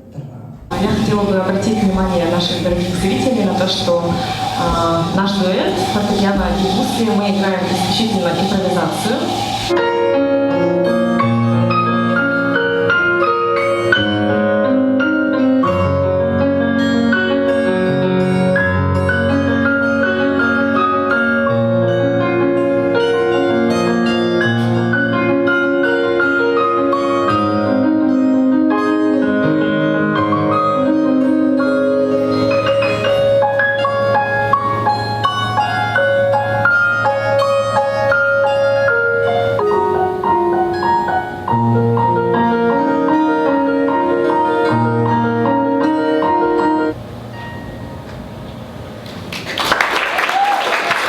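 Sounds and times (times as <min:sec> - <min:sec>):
piano chords and melody: 0:00.6 - 0:49.0
plucked strings ringing: 0:09.3 - 0:48.6.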